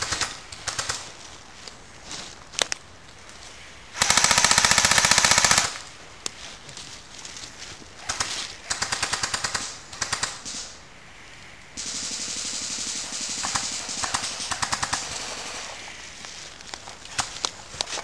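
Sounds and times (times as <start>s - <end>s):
airsoft guns firing full-auto: 4.0s - 5.8s, 8.1s - 10.8s, 11.8s - 15.7s.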